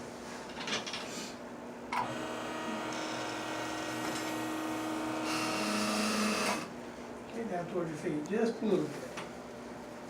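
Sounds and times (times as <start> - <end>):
small electric motor humming: 2.0 - 6.7.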